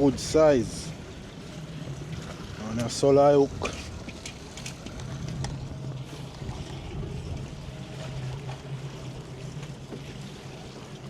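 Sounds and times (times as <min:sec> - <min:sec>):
boat engine idling: 0:00.0 - 0:11.0
water noise: 0:00.0 - 0:11.0
wind: 0:00.0 - 0:11.0.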